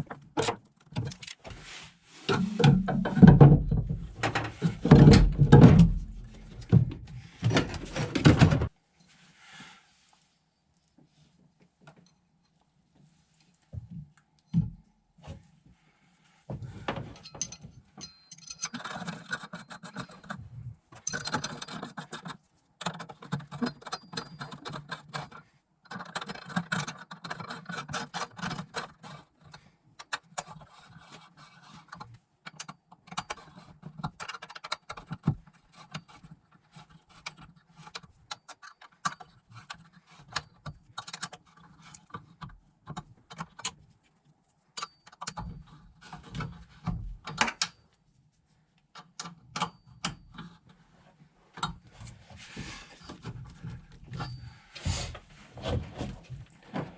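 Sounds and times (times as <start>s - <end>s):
metal parts clinking and scraping: 17.2s - 20.4s, 21.0s - 22.3s.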